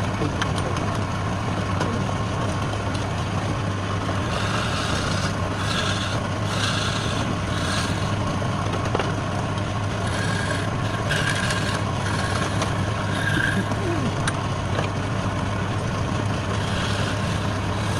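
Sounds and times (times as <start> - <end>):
wood lathe motor hum: 3.2 - 17.9
cutting tool scraping wood: 4.1 - 8.3, 10.0 - 13.8, 16.4 - 17.9.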